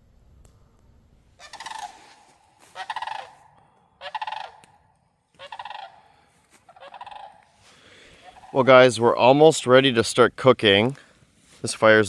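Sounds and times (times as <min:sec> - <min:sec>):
bird rattling call: 0:01.4 - 0:03.4, 0:04.0 - 0:04.6, 0:05.4 - 0:06.0, 0:06.7 - 0:07.6.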